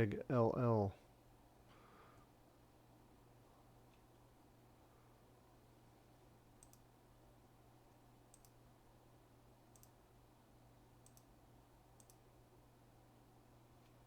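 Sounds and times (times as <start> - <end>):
steady low hum: 0.0 - 14.0
computer mouse clicks: 6.6 - 6.9, 8.3 - 8.6, 9.7 - 10.0, 11.0 - 12.3.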